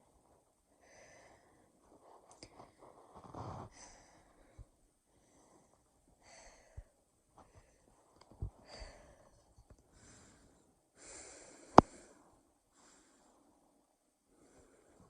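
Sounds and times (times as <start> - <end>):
person breathing heavily: 0.8 - 1.8, 2.5 - 13.5.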